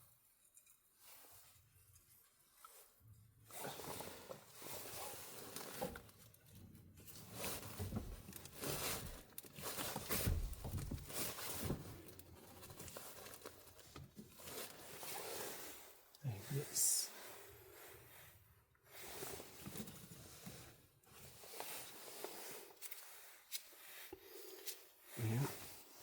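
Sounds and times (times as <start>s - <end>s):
parts rustling and knocking: 3.8s - 15.2s.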